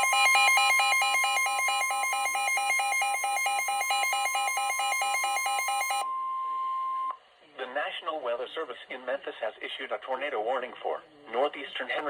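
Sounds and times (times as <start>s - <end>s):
steady warning tone: 0.0s - 6.3s
two-pitch alarm beeping: 0.0s - 7.2s.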